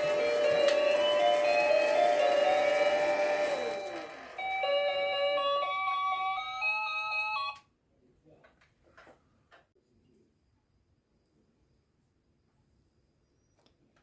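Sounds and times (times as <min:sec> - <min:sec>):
toy electronic beeping tune: 0:00.0 - 0:07.6.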